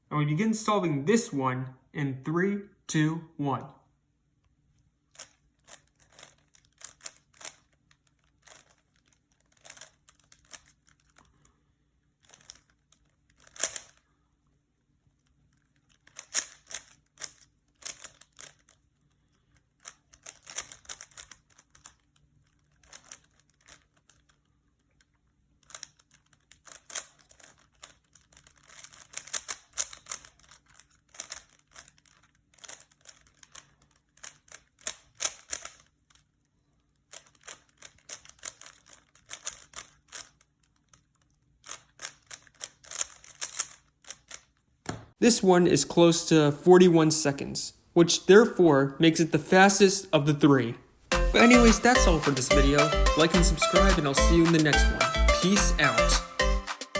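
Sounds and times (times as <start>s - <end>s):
plastic puzzle cube clicking: 5.1s - 11.4s, 12.2s - 14.0s, 15.2s - 36.3s, 36.9s - 44.6s.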